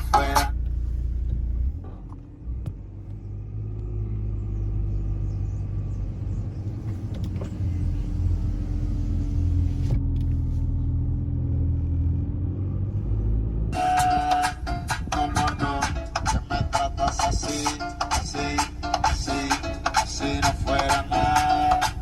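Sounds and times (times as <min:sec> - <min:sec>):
car engine low rumble: 0:00.0 - 0:22.0.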